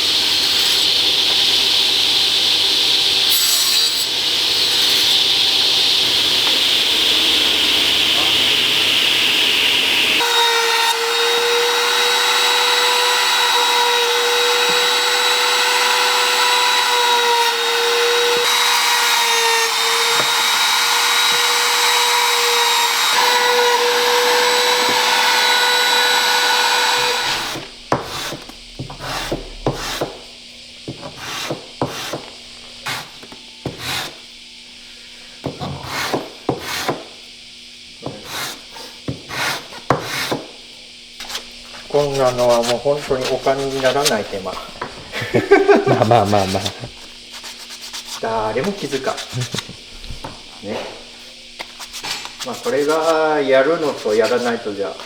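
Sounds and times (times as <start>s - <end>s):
power tool whining: 0.0s - 36.2s
wood scraping and rubbing: 23.2s - 30.2s, 41.2s - 44.8s.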